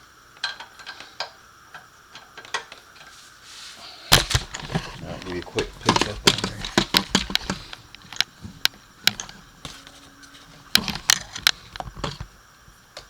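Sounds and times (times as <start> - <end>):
metal tools clinking: 3.7 - 12.2.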